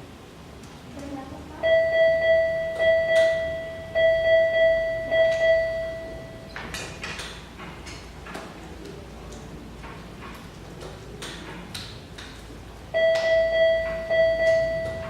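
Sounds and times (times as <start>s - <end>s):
medical equipment alarm beeping: 1.6s - 6.6s, 12.9s - 15.0s.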